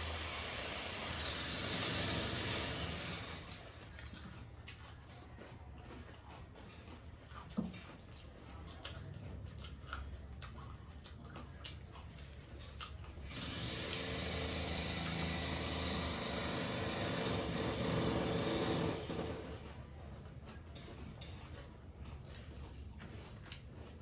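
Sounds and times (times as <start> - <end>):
steady hum and hiss: 0.0 - 3.4
crunchy chewing: 0.9 - 24.0.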